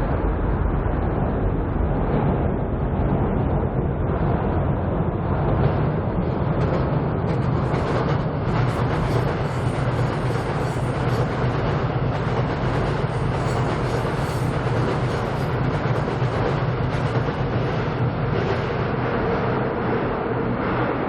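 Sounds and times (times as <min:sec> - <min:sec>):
strong low hum: 0:00.0 - 0:21.0
train wheels rolling on rails: 0:05.5 - 0:19.5.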